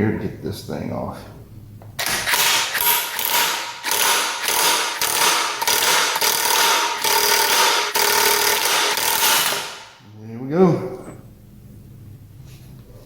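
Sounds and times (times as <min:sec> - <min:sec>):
power wrench whining in bursts: 0:02.0 - 0:10.0.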